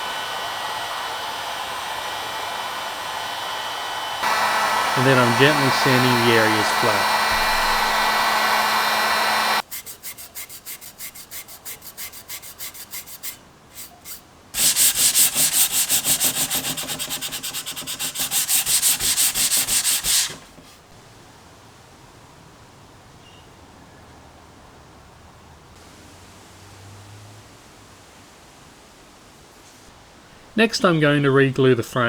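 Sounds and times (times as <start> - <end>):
hand sanding wood filler: 0.0 - 20.9
heat gun blowing: 0.0 - 20.9.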